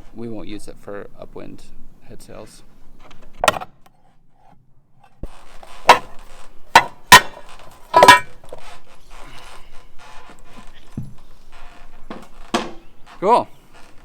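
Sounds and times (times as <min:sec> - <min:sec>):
scraping of metal parts: 0:05.1 - 0:14.0
sharp metallic clanks: 0:05.8 - 0:08.6.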